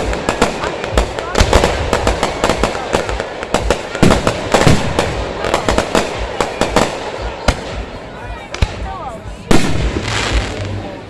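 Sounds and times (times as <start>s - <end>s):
fireworks bangs and crackling: 0.0s - 11.0s.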